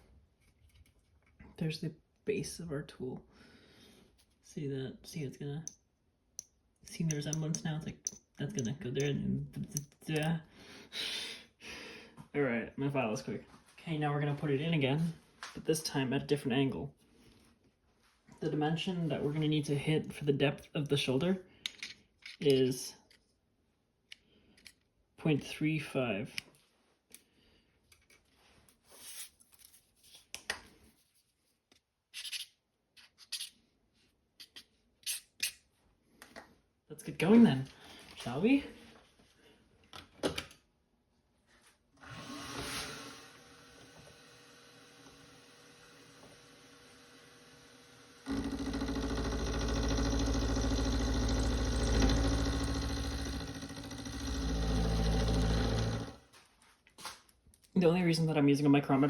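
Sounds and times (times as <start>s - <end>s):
milling machine cutting metal: 48.3s - 56.2s.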